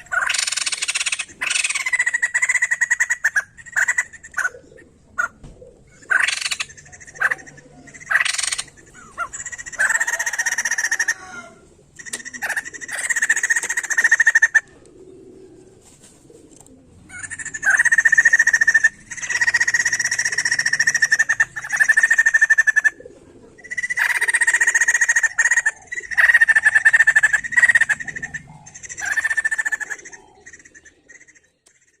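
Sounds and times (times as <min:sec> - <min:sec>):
bird rapid chattering song: 0:00.0 - 0:05.4, 0:06.0 - 0:11.2, 0:12.0 - 0:14.7, 0:17.1 - 0:23.0, 0:23.6 - 0:32.0.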